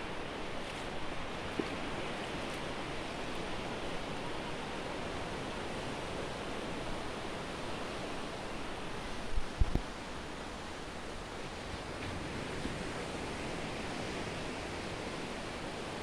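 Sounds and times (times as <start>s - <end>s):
sea waves and surf: 0.0s - 16.0s.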